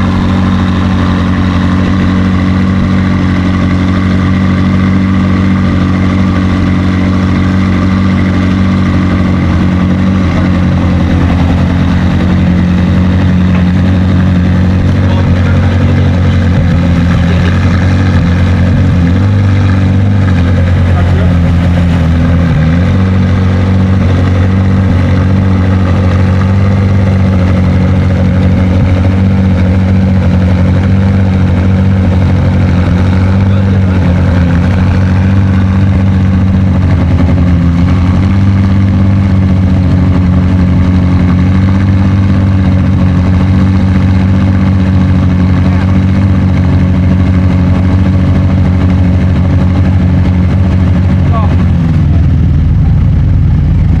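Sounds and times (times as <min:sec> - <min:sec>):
car engine idling: 0:00.0 - 0:54.0.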